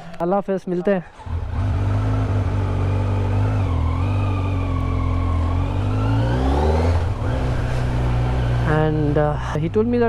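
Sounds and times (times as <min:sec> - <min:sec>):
motorcycle engine riding off: 0:01.2 - 0:09.2.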